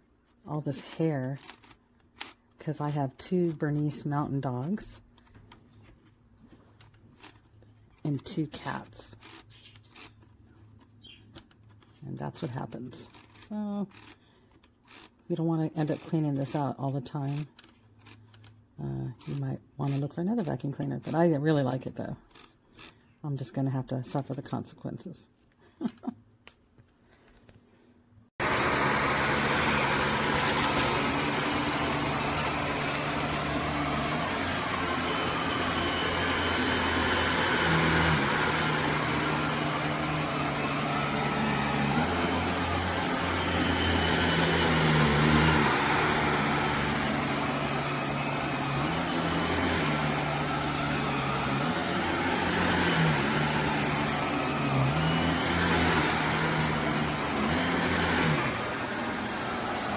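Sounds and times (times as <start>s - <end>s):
vacuum cleaner running: 28.4s - 59.9s.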